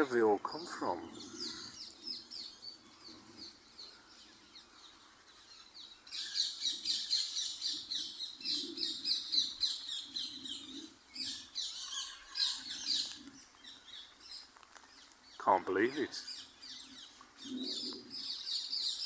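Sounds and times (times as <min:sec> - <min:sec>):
parrots squawking: 0:11.3 - 0:13.1.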